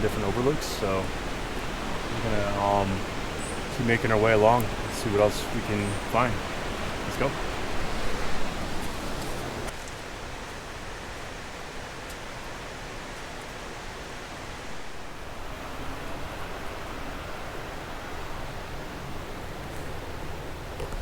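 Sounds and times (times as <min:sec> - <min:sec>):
water rushing through gorge: 0:00.0 - 0:21.0
faint clicks: 0:04.5 - 0:04.8.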